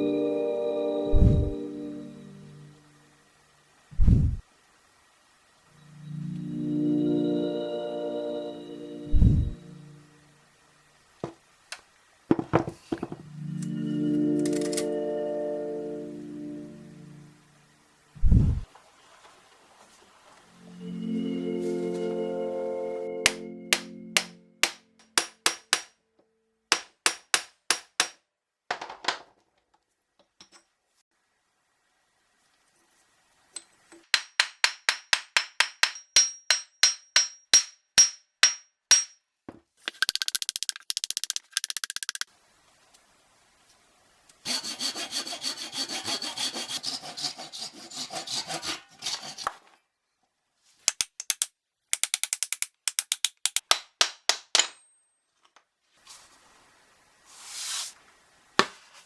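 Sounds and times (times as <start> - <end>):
hand tool rasping on metal: 44.5 - 49.5.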